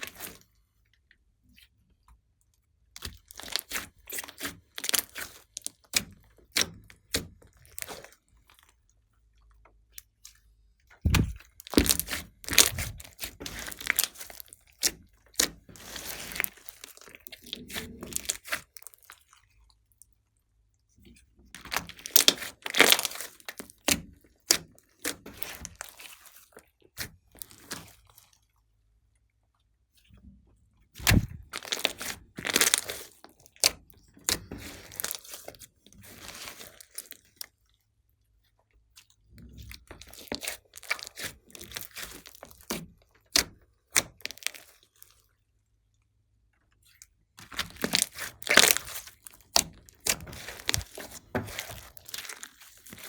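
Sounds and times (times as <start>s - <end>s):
slime squeezed by hand crackling: 11.1s - 18.6s, 21.8s - 23.7s, 31.0s - 33.7s, 44.0s - 44.7s, 47.4s - 53.0s.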